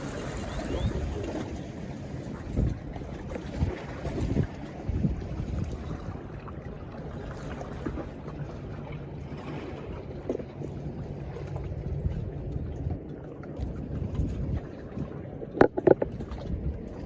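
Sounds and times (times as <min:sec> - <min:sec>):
wind buffeting microphone: 0:00.0 - 0:17.0
brief knock: 0:15.6 - 0:16.1.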